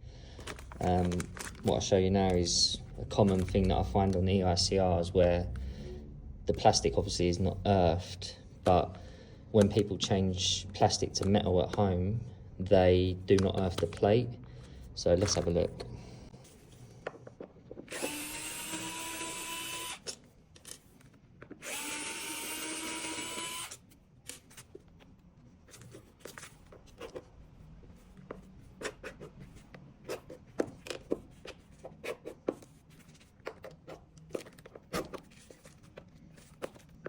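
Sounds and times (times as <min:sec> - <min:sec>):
power screwdriver running: 0:17.9 - 0:20.1, 0:21.6 - 0:23.8.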